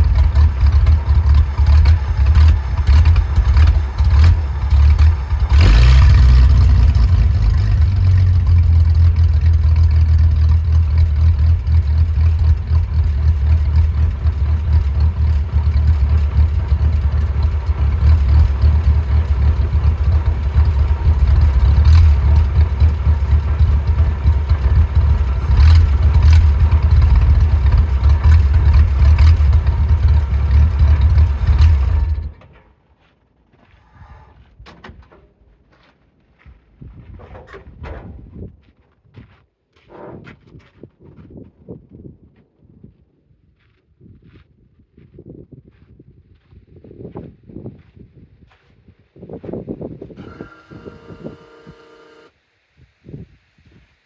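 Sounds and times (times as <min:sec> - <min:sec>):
engine idling roughly: 0:00.0 - 0:32.5.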